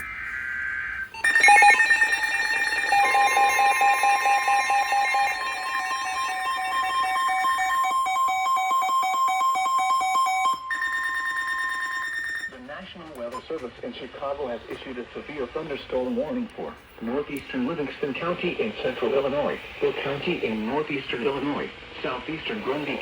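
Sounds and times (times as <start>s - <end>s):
buzzing data burst: 0.0s - 8.8s
pulsing ringing alarm: 0.0s - 12.7s
steady warning tone: 0.0s - 12.8s, 15.6s - 23.0s.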